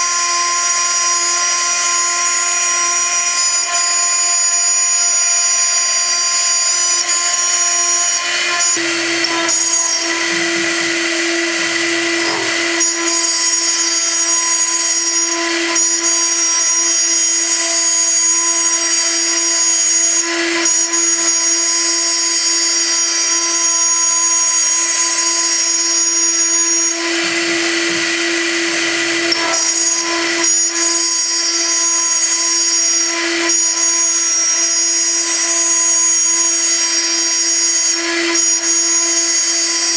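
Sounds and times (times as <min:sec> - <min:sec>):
milling spindle whine: 0:00.0 - 0:39.9
low stepped buzz: 0:08.7 - 0:13.8.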